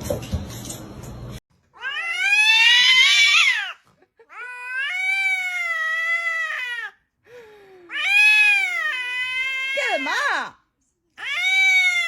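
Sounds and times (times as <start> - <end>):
cat meowing: 1.8 - 6.9, 7.9 - 10.2, 11.2 - 12.0.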